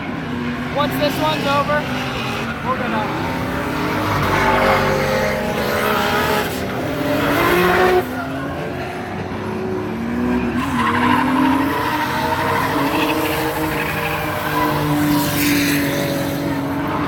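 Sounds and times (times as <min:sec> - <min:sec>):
car engine revving: 0:00.0 - 0:17.0
tyres squealing: 0:10.4 - 0:17.0.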